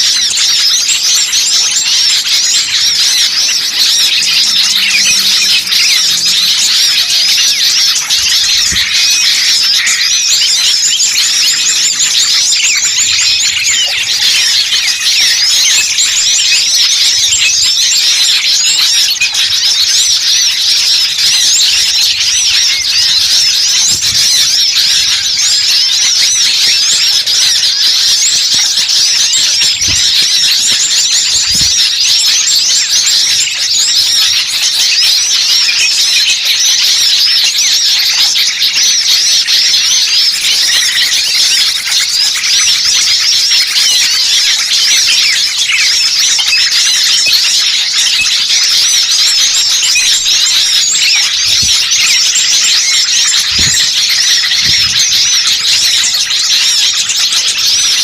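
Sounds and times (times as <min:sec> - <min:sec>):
many small birds chirping: 0:00.0 - 0:58.0.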